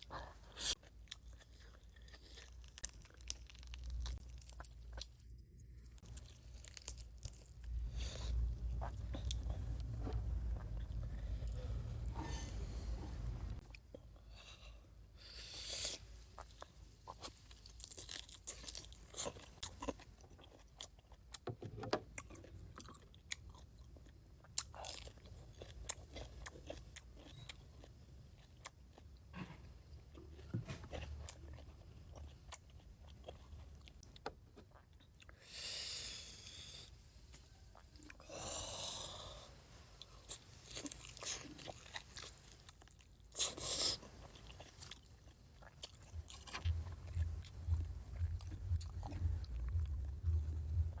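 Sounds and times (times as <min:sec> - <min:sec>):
chewing and biting chicken: 0:40.0 - 0:51.0.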